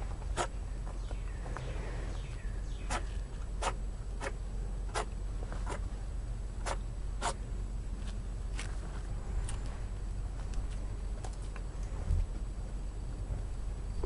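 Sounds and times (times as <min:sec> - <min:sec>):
rabbit sneezing: 0:00.3 - 0:00.6, 0:02.8 - 0:05.9, 0:06.6 - 0:07.4.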